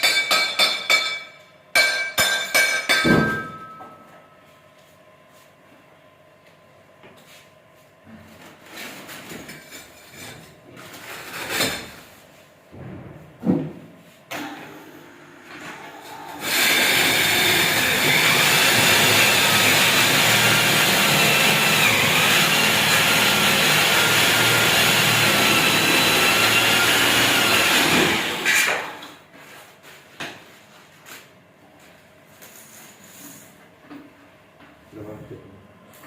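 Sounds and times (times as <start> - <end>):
electric power drill running: 16.1 - 28.6.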